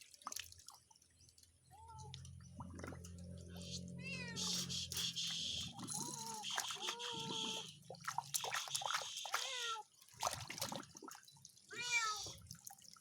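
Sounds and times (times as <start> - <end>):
water splashing and dripping: 0.0 - 13.0
cat meowing: 3.7 - 4.7, 6.0 - 7.7, 9.4 - 9.8, 11.7 - 12.4.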